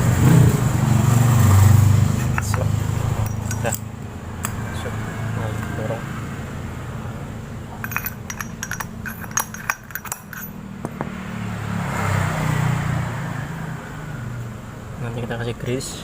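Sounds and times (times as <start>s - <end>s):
metal parts clinking: 2.2s - 4.6s, 7.8s - 10.6s.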